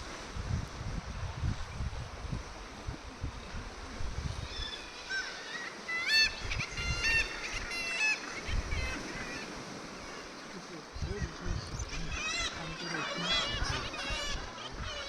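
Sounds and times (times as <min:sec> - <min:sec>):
low gusty rumble: 0:00.0 - 0:04.5
seabirds calling: 0:02.6 - 0:15.0.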